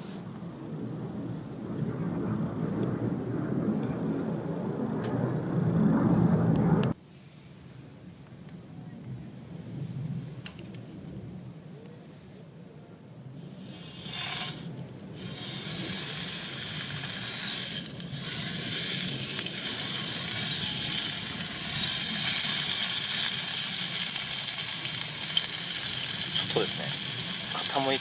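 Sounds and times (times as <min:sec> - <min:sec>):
beef sizzling in a pan: 0:15.2 - 0:28.0.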